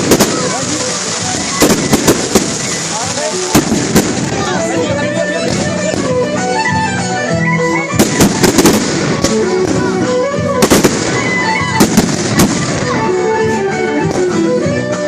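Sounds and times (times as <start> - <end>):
fireworks bangs: 0.0 - 6.3, 7.9 - 13.1
music playing: 0.0 - 15.0.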